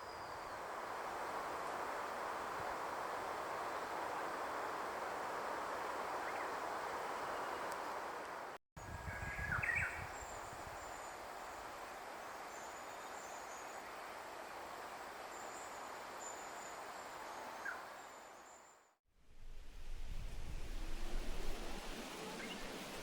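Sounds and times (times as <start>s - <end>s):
steady hiss: 19.2s - 23.0s.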